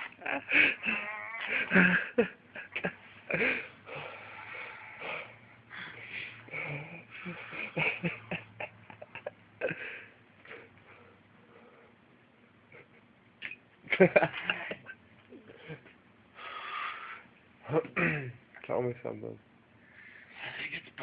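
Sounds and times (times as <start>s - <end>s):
wheezing breaths: 3.2s - 7.8s, 15.4s - 17.3s.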